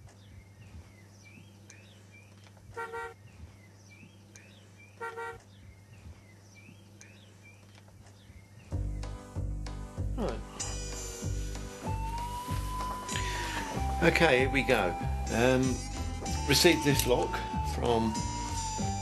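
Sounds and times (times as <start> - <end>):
car horn toots: 2.8 - 3.2, 5.0 - 5.4.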